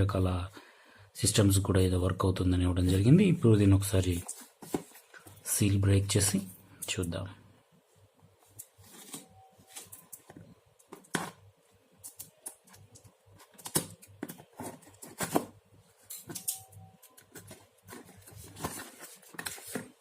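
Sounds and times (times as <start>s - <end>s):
cardboard box being handled: 17.4s - 20.0s.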